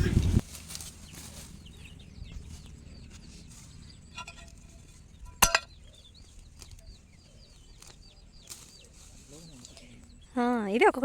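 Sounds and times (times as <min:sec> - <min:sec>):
birds chirping: 0:00.0 - 0:11.0
sharp metallic clink: 0:05.3 - 0:05.8.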